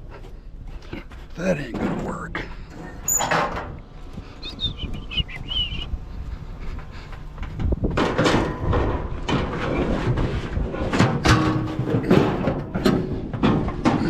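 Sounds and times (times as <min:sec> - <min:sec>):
metal grill clanking and scraping: 0:01.5 - 0:03.8, 0:07.5 - 0:14.0.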